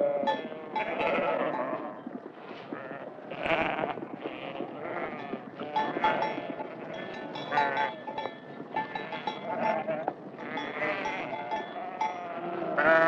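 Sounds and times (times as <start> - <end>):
farm animals calling: 0.0 - 2.1, 2.7 - 13.0
bells clinking: 4.8 - 13.0.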